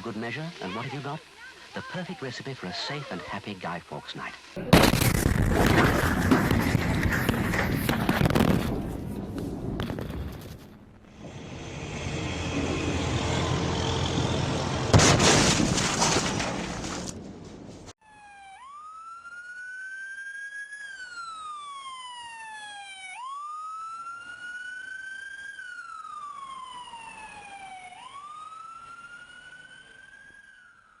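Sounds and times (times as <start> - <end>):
siren wailing: 11.1 - 14.9, 18.0 - 31.0.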